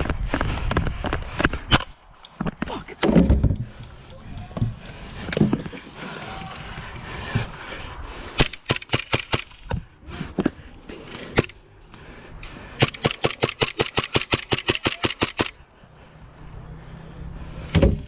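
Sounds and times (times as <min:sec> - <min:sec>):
airsoft guns firing: 0:08.4 - 0:09.7, 0:12.8 - 0:15.6.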